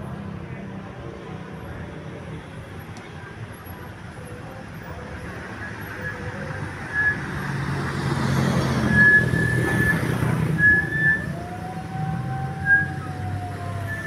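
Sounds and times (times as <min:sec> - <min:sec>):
long rising tone: 0:06.0 - 0:14.0.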